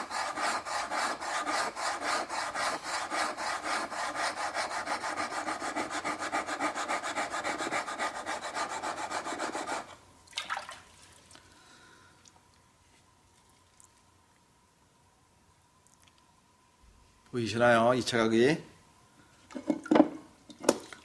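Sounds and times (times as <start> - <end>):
steel rasping on sharpening plate: 0.0 - 9.9.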